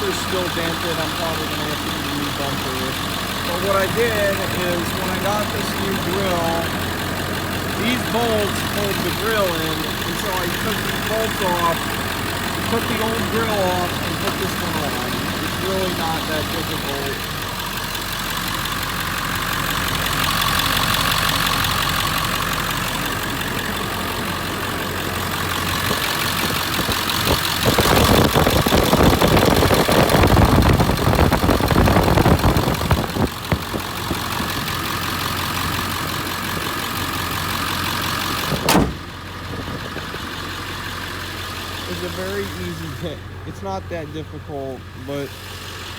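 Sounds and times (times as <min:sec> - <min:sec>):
diesel engine idling: 0:00.0 - 0:45.9
sharp bang: 0:38.6 - 0:39.1.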